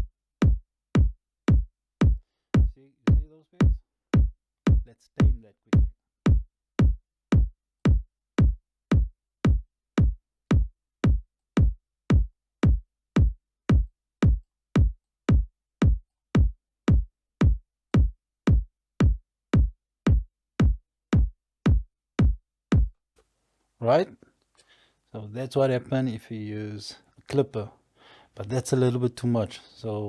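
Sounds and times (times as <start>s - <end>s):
drum machine kick: 0.0s - 22.9s.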